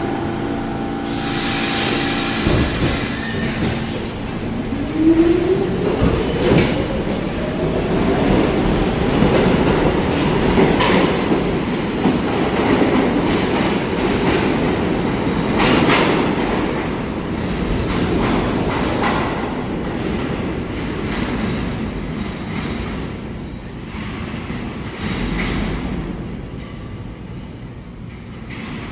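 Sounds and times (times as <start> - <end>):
train motor whine: 0.0 - 4.4
wheels rumbling on rail: 0.0 - 28.9
wheel squeal: 6.4 - 7.4.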